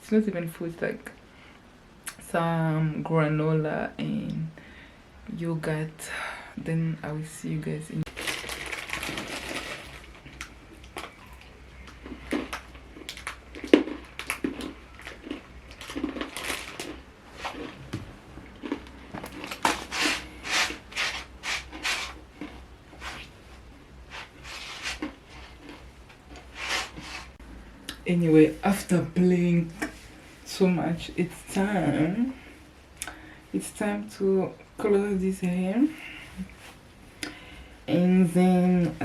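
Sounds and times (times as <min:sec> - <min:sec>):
rustling: 0:08.1 - 0:11.4, 0:18.7 - 0:27.4.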